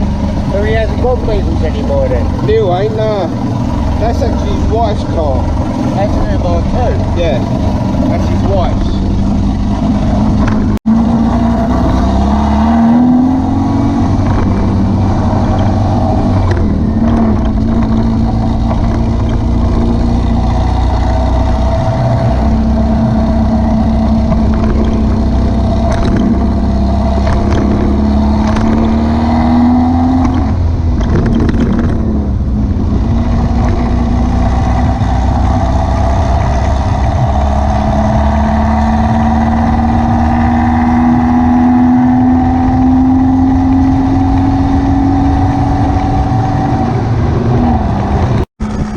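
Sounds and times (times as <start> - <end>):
buggy engine accelerating: 0.0 - 48.9
road noise: 0.0 - 48.9.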